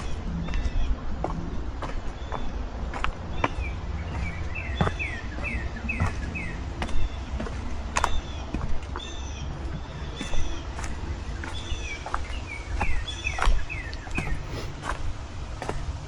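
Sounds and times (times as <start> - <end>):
songbirds chirping: 0.0 - 16.0
steady low rumble: 0.0 - 16.0.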